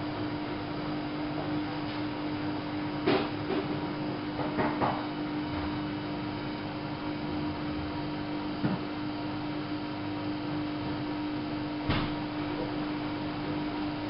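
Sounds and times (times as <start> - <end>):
washing machine humming: 0.0 - 14.0
washing machine knocks: 4.4 - 5.1.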